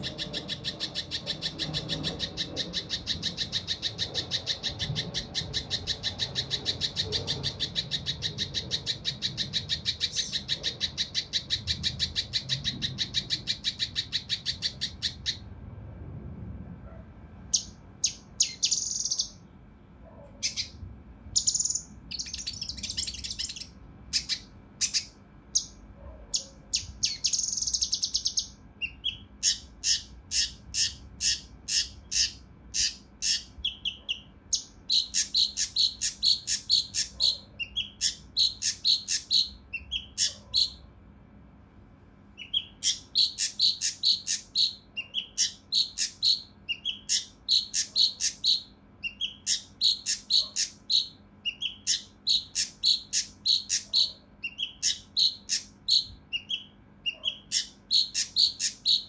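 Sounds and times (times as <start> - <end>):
harsh buzzy bird phrases: 0.0 - 15.4, 26.4 - 40.8, 42.4 - 59.0
bird calling in rapid notes: 0.0 - 15.5, 17.6 - 19.4, 21.4 - 25.8, 26.4 - 40.9, 42.3 - 59.0.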